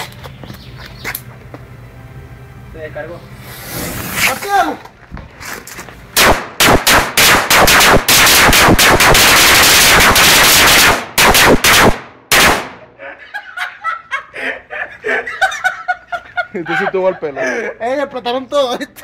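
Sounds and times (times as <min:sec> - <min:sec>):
firecrackers banging and crackling: 0:06.2 - 0:12.8.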